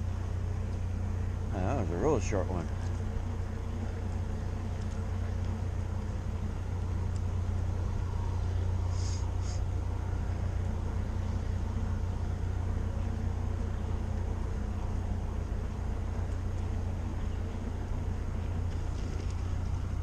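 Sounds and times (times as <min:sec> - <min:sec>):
bike tyre noise on dirt trail: 0:13.4 - 0:20.0.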